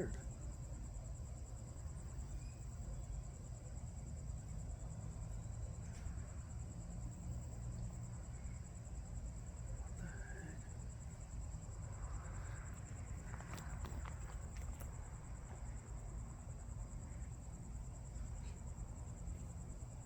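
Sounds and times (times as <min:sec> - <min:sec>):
crickets trilling: 0:00.0 - 0:20.0
low background rumble: 0:00.0 - 0:20.0.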